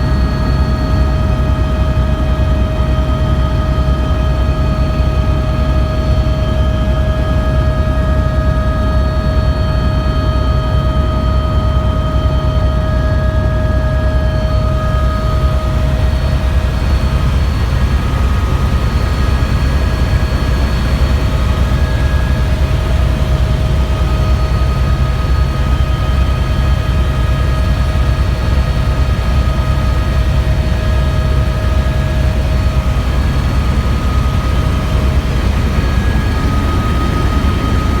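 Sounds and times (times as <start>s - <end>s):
faint whining tones: 0.0s - 38.0s
helicopter rotor and engine drone: 0.0s - 38.0s.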